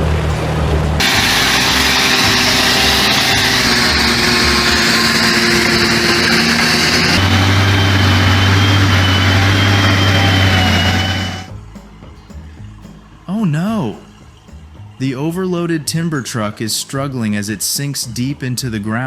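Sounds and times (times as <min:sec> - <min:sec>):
heavy vehicle engine running: 0:00.0 - 0:11.6
deep engine low hum: 0:00.0 - 0:13.1.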